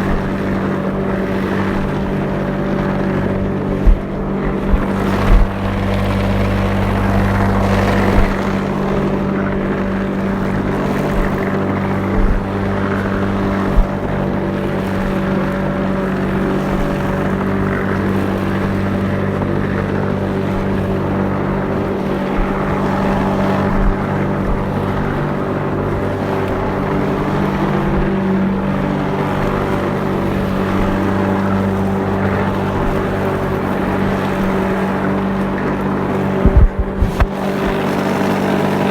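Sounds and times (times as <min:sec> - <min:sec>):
lawnmower running: 0:00.0 - 0:38.9
short knocks: 0:03.2 - 0:09.2, 0:36.4 - 0:37.6.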